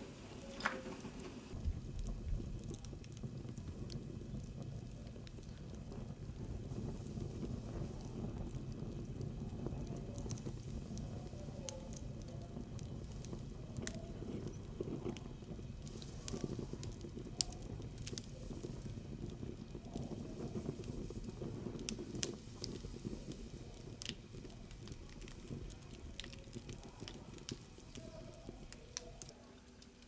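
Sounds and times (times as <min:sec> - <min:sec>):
fire crackling and popping: 0:00.0 - 0:30.0
fire rumbling: 0:00.0 - 0:30.0.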